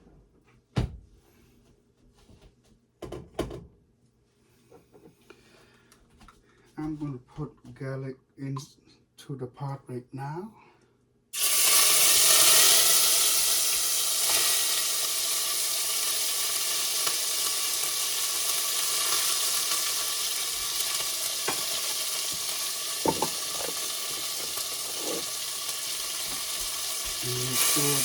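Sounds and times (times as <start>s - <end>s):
garlic sizzling in oil: 11.4s - 28.0s.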